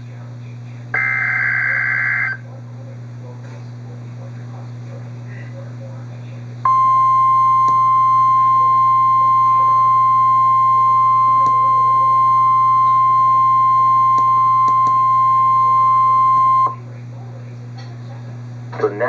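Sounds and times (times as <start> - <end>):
low radio hum: 0.0 - 19.0
steady warning alarm tone: 1.0 - 2.4, 6.7 - 16.8.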